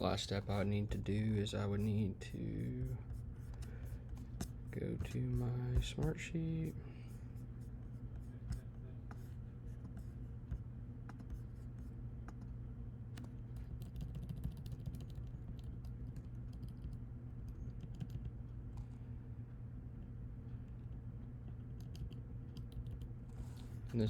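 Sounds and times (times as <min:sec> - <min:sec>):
low electrical hum: 0:00.0 - 0:24.0
computer keyboard typing: 0:13.2 - 0:18.4, 0:20.6 - 0:23.1.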